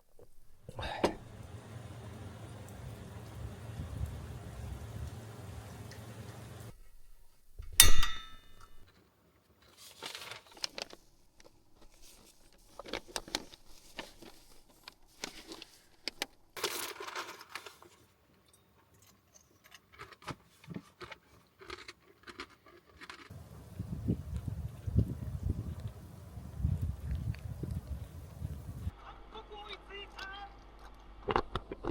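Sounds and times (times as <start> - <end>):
metallic clink: 7.6 - 8.8
small objects handled: 9.6 - 18.1.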